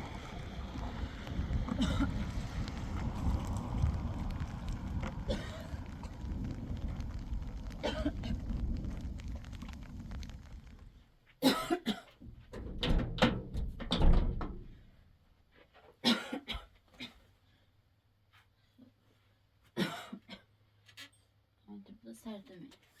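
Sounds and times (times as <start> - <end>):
woman coughing: 11.4 - 12.1, 16.0 - 17.2, 19.8 - 20.5.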